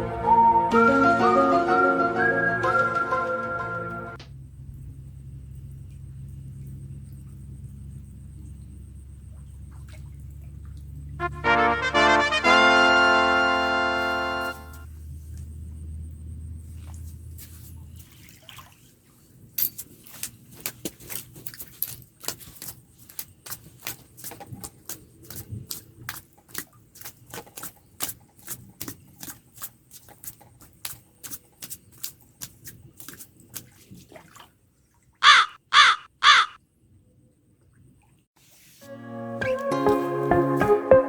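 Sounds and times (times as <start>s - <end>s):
crow cawing: 35.2s - 36.6s.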